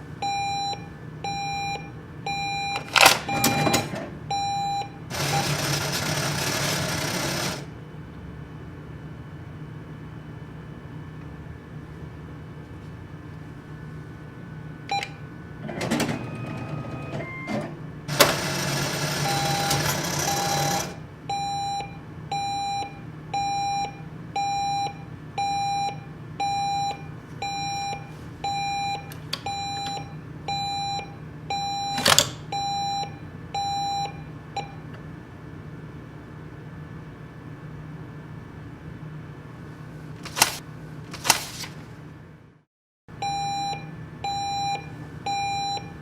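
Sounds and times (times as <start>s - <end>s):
low machine hum: 0.0s - 42.5s
machine beeps: 0.2s - 7.6s, 14.9s - 34.8s, 43.2s - 46.0s
cash dispenser rattling: 2.8s - 4.1s, 5.1s - 7.7s, 15.6s - 21.0s, 32.0s - 32.4s, 40.2s - 41.8s
mechanical whir: 5.1s - 7.7s, 14.8s - 21.0s.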